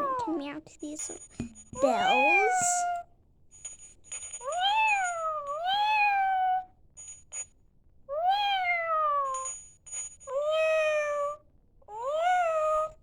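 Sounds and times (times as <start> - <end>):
toy kitten meowing: 1.8 - 3.0, 4.4 - 6.7, 8.1 - 9.5, 10.3 - 13.0.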